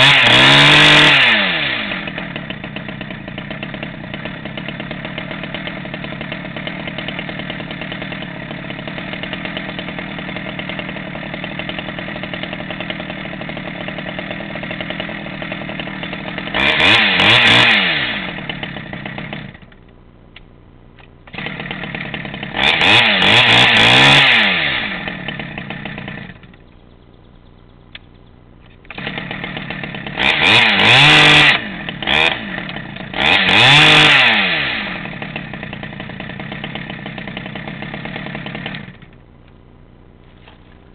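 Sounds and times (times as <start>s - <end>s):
chainsaw idling and revving: 0.0s - 19.8s, 21.2s - 26.7s, 28.8s - 39.6s.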